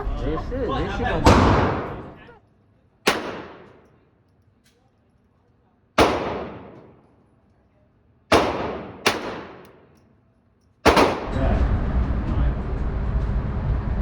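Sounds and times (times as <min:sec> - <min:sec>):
gunshots: 0:01.2 - 0:02.2, 0:03.1 - 0:03.9, 0:06.0 - 0:07.1, 0:08.3 - 0:09.9, 0:10.8 - 0:11.6.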